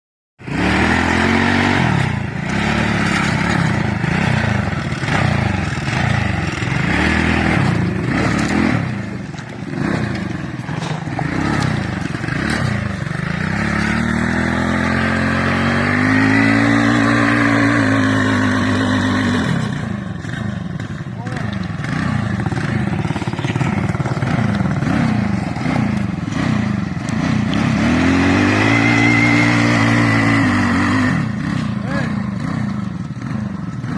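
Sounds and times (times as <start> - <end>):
off-road vehicle engine revving: 0.4 - 33.9.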